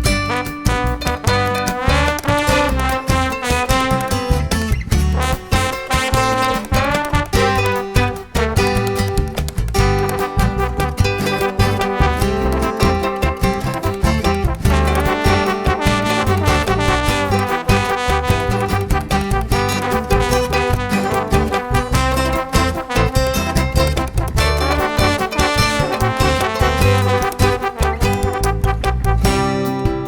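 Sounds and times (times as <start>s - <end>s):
swing music with brass horns: 0.0s - 30.0s.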